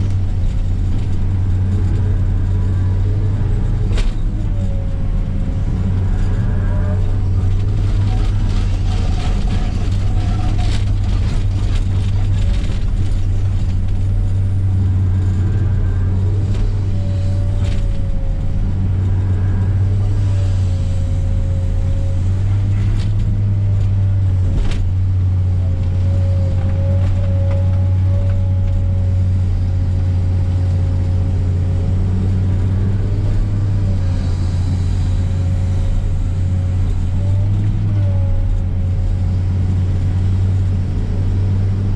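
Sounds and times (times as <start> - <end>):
diesel engine running: 0.0 - 41.9.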